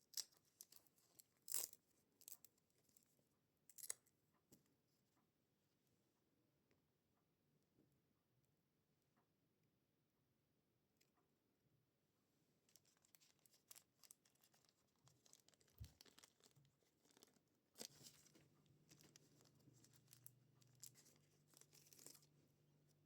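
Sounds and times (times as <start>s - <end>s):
packaging rustling and tearing: 12.8s - 22.3s.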